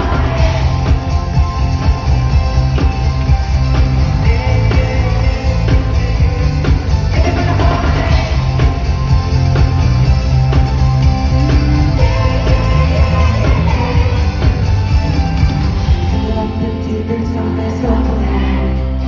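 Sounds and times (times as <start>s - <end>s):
person singing: 0.0s - 1.5s, 4.0s - 9.3s, 11.7s - 15.0s, 16.0s - 19.0s
live pop band with heavy bass: 0.0s - 19.0s.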